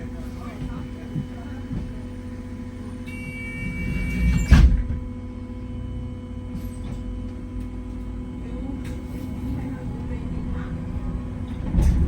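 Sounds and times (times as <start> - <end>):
bus humming: 0.0 - 12.0
bus doors shutting thud: 3.7 - 5.1, 11.5 - 12.0.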